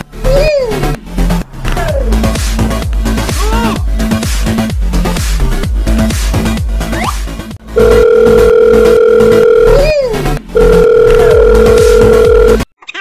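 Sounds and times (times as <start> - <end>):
electronic music with steady beat: 1.8 - 12.6
loud steady electronic tones: 10.6 - 12.6.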